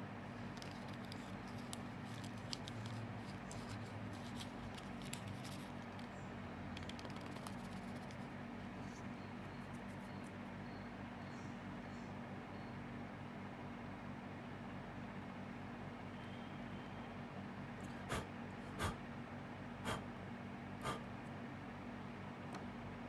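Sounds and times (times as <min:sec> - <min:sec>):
low electrical hum: 0:00.0 - 0:23.0
faint clicks and small taps: 0:00.4 - 0:08.3.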